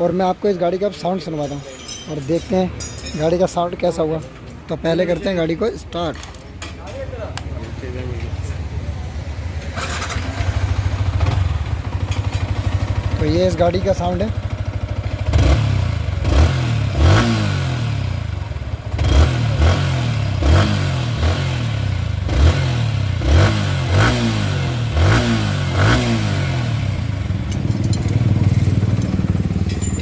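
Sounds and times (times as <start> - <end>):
motorcycle engine revving: 7.8 - 30.0.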